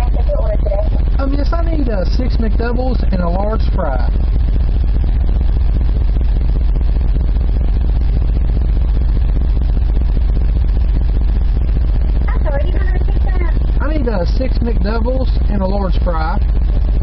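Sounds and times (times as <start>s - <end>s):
truck engine idling: 0.0s - 17.0s.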